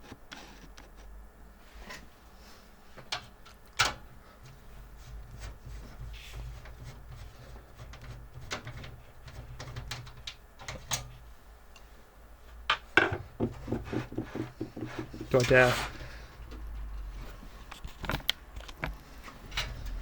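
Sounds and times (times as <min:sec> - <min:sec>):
computer parts clicking and knocking: 0:05.4 - 0:11.2, 0:12.7 - 0:16.9.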